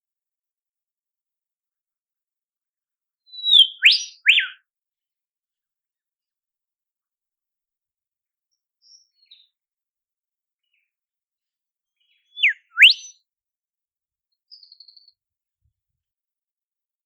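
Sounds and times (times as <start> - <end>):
bird whistling song: 3.3 - 4.6, 8.8 - 9.5, 12.0 - 13.2.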